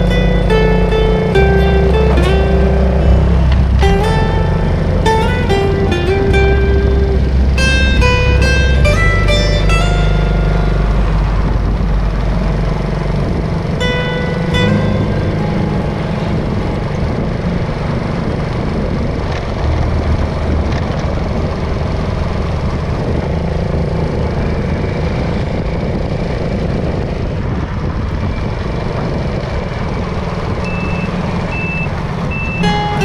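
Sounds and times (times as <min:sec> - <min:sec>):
road noise: 0:00.0 - 0:33.0
vehicle engines droning: 0:00.0 - 0:33.0
short high beeps: 0:30.7 - 0:33.0.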